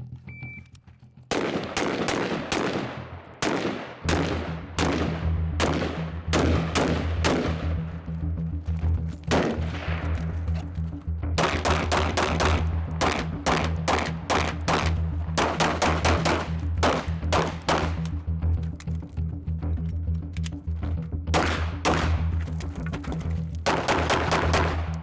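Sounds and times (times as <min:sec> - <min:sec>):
semi-automatic gunshots: 0:01.3 - 0:07.8, 0:09.3 - 0:10.0, 0:11.4 - 0:18.1, 0:21.4 - 0:22.4, 0:23.6 - 0:25.0.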